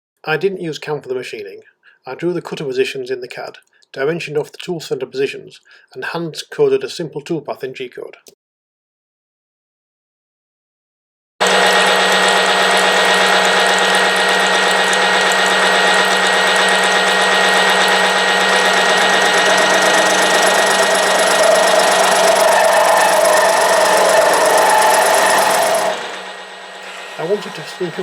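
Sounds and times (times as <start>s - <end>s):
spindle hum: 11.4s - 27.1s
cnc machine cutting metal: 11.4s - 28.0s.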